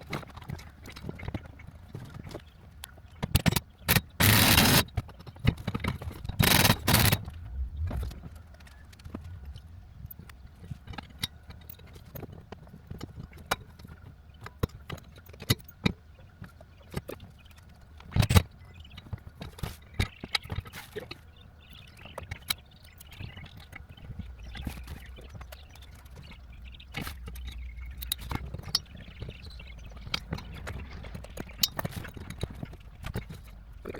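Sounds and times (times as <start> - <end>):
tools and metal parts clicking: 3.3 - 8.1, 22.1 - 33.6.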